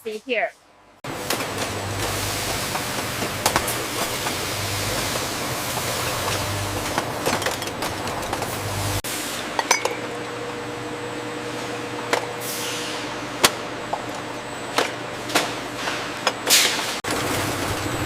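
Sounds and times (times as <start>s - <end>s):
machinery humming: 1.0s - 9.0s, 17.0s - 18.0s
glass bottles clinking: 5.7s - 8.6s, 9.6s - 10.0s.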